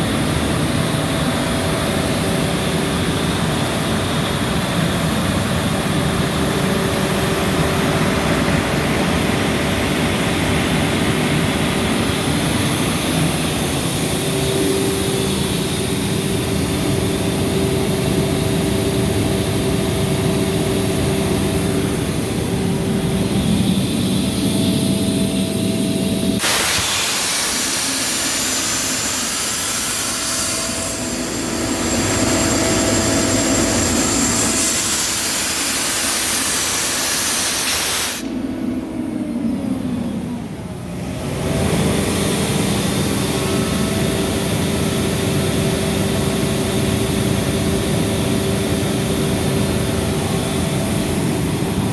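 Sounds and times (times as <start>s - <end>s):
diesel air compressor running: 0.0s - 51.9s
loud hiss of escaping air: 26.4s - 38.6s.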